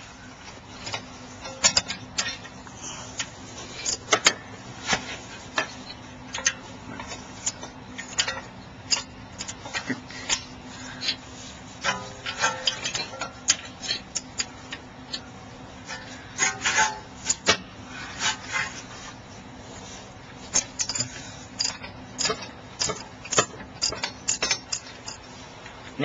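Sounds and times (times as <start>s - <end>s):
ratchet clicking: 20.5s - 25.2s.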